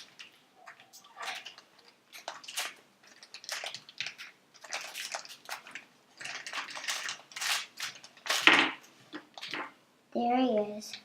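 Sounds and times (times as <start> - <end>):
plastic packaging crinkling: 0.0 - 9.7.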